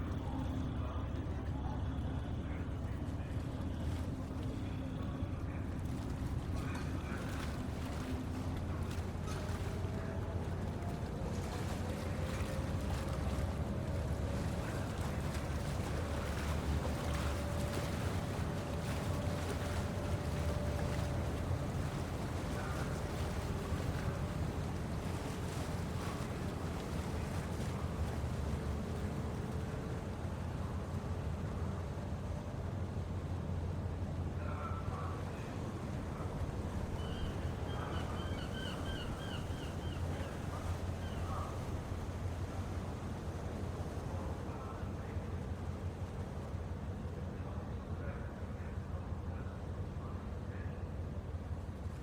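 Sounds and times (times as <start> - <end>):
faint steady hum: 0.0 - 52.0
low rumble of ships and water: 0.0 - 52.0
wind: 0.0 - 52.0
gull calling: 36.9 - 41.6.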